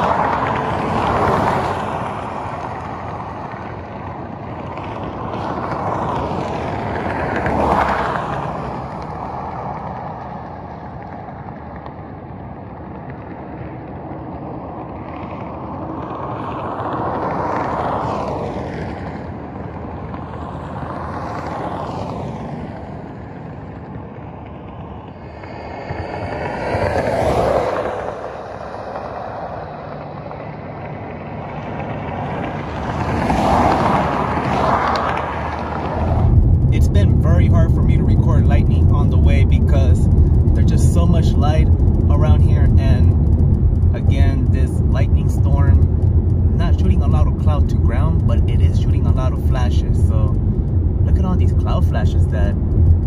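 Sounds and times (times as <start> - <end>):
steady background rush: 0.0 - 53.0
vehicles passing by: 0.0 - 53.0.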